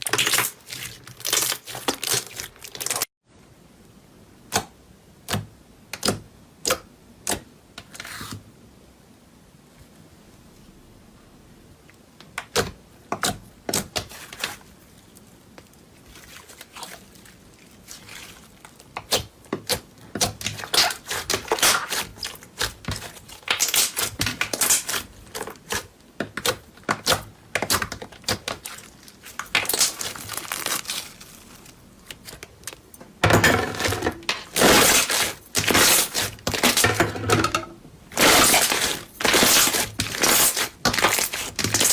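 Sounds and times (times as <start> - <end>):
slime crackling and popping: 0.0 - 3.1, 18.4 - 32.8, 38.2 - 41.9.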